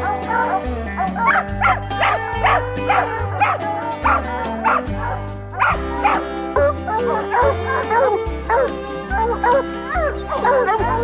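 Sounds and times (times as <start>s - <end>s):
hounds barking: 0.0s - 6.3s, 6.9s - 8.8s.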